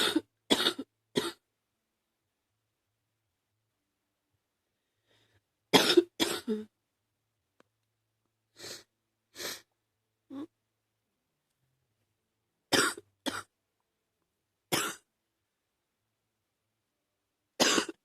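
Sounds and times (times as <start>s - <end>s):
person coughing: 0.0s - 1.4s, 5.8s - 6.7s, 12.7s - 13.5s, 14.7s - 15.1s, 17.6s - 18.0s.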